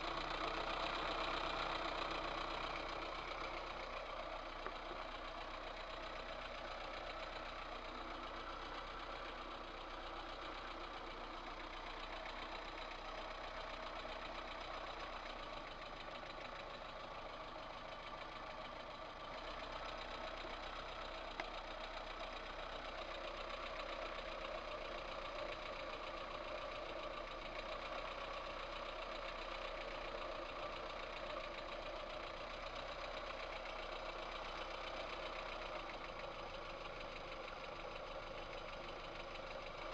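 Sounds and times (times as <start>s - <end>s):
car engine idling with a knock: 0.0s - 9.2s.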